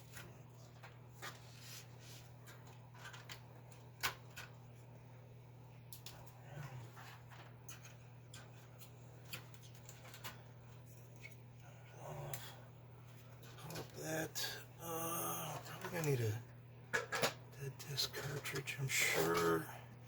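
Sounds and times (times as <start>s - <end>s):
low electrical hum: 0.0s - 20.0s.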